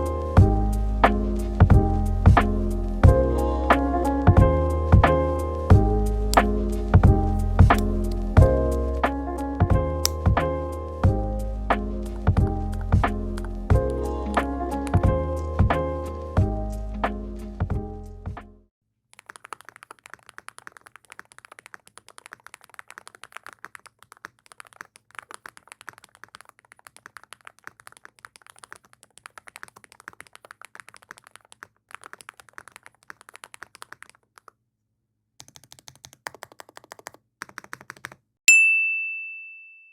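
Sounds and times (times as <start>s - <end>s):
keyboard key clicks: 35.4s - 38.2s.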